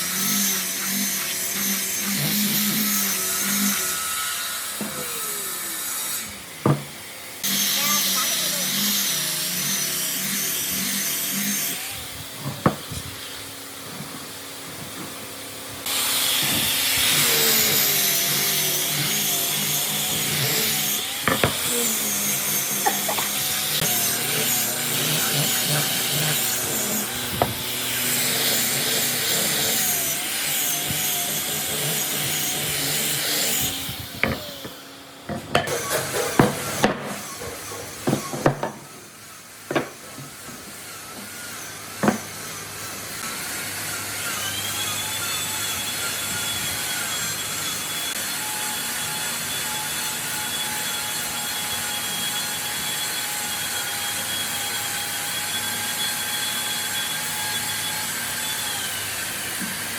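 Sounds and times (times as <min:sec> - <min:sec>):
power tool whining on wood: 0:00.0 - 0:59.9
knocks and taps on wood: 0:06.6 - 0:06.9.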